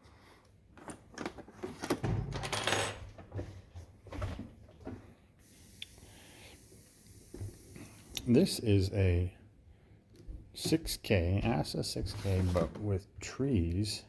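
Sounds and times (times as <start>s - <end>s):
metal lock parts clicking and rattling: 0.8s - 3.3s.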